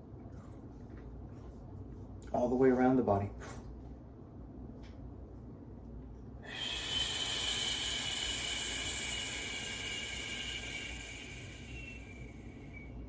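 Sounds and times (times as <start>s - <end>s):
person exhaling through lips: 6.4s - 13.0s.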